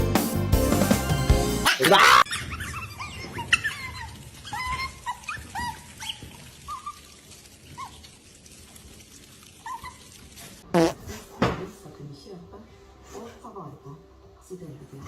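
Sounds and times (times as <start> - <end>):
dog whimpering: 1.9 - 7.1.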